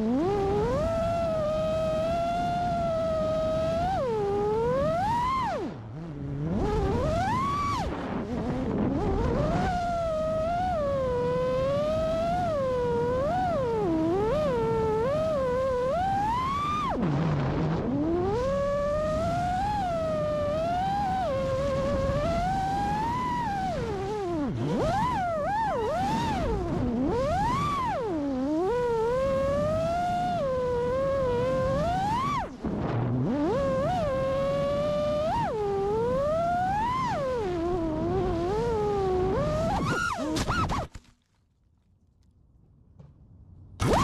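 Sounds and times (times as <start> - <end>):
quadcopter motors whining: 0.0 - 41.0, 43.8 - 44.0.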